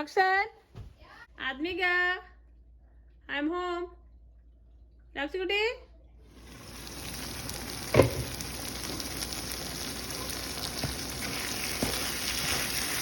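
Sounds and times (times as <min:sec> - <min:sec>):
food sizzling in hot oil: 0:06.3 - 0:13.0.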